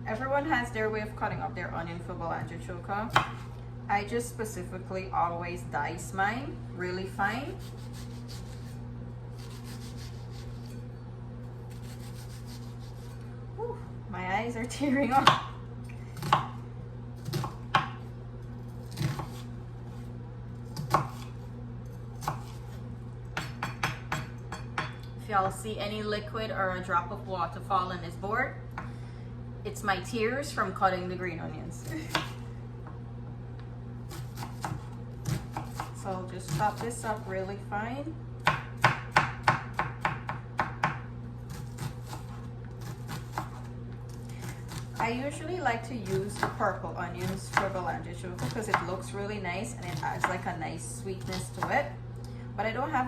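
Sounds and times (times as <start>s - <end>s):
microwave oven hum: 0.0s - 53.0s
knife chopping on cutting board: 3.1s - 3.5s, 9.4s - 10.7s, 11.7s - 13.2s, 16.2s - 16.6s, 17.2s - 18.0s, 18.9s - 19.5s, 20.8s - 21.4s, 22.2s - 22.8s, 23.4s - 24.9s, 32.1s - 32.4s, 34.1s - 36.8s, 38.4s - 43.7s, 46.0s - 46.6s, 48.4s - 48.9s, 49.8s - 50.4s, 51.2s - 51.8s.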